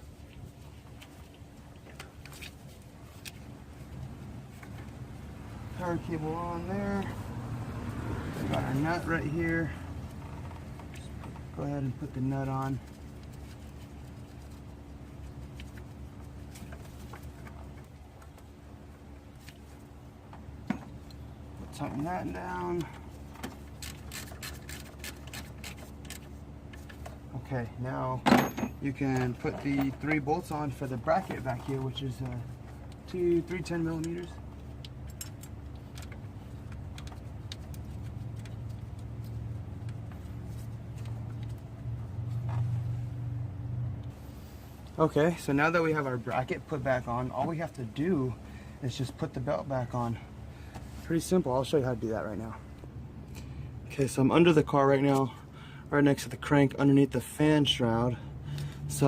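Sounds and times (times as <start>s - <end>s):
steady low hum: 0.0s - 59.0s
small metallic clicks: 33.9s - 40.2s.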